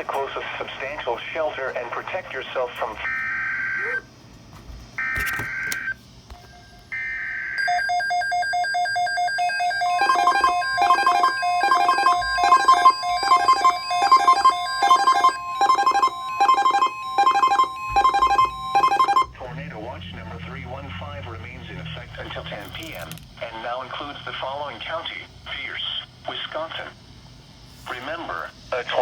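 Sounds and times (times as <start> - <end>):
electronic alert tone with beeps: 7.6 - 19.7
screechy digital data tones: 7.6 - 24.0.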